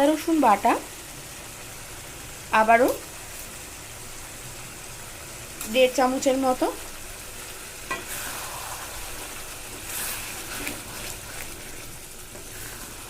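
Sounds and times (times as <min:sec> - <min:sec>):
food sizzling in frying pan: 0:00.0 - 0:13.0
utensil scraping pan: 0:09.7 - 0:13.0.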